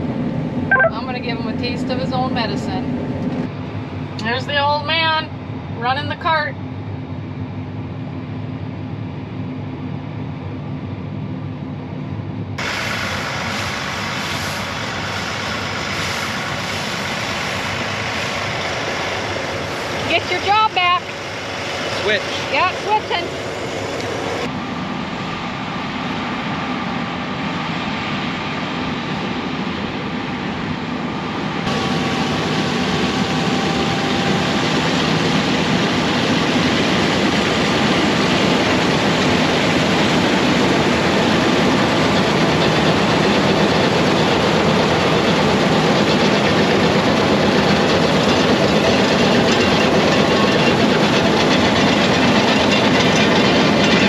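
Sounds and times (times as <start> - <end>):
combine harvester running: 6.7 - 54.0
rattling clatter: 48.3 - 54.0.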